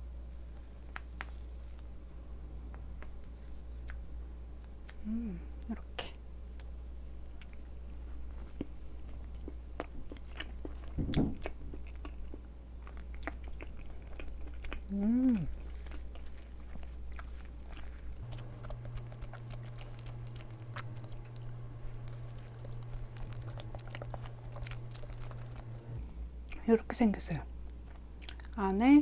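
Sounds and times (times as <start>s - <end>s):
chewing and wet mouth sounds: 7.3s - 26.7s, 27.8s - 28.7s.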